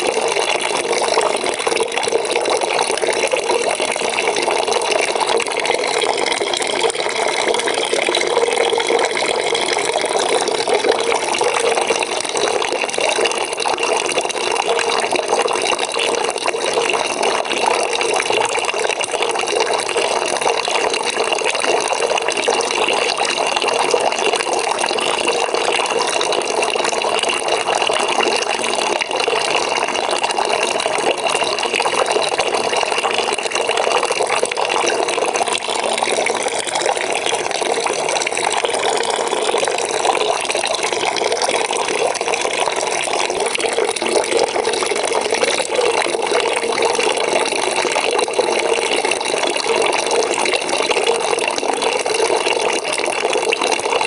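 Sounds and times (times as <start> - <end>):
tap water pouring into bucket: 0.0 - 54.0.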